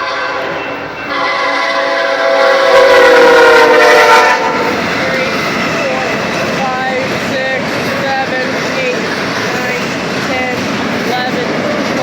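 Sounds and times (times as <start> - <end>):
locomotive air horn blast: 0.0 - 6.3
train passing: 0.0 - 12.0.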